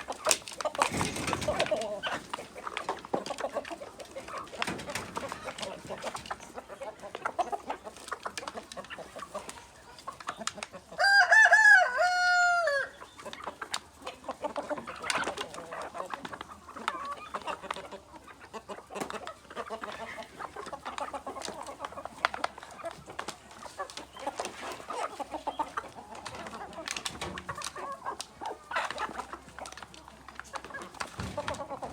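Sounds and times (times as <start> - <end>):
chickens clucking: 0.0 - 31.9
rooster crowing: 11.0 - 12.9.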